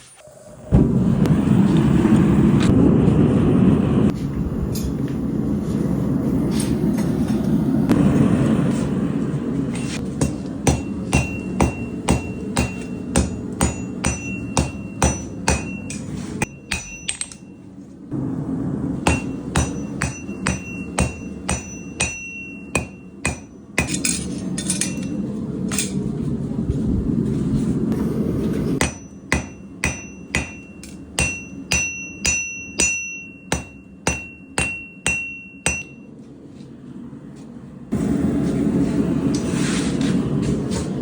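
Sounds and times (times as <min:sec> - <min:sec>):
low rushing noise: 0:00.2 - 0:10.1, 0:18.0 - 0:19.6, 0:36.2 - 0:41.0
hammer striking steel on anvil: 0:09.7 - 0:17.6, 0:19.0 - 0:26.0, 0:28.8 - 0:36.1.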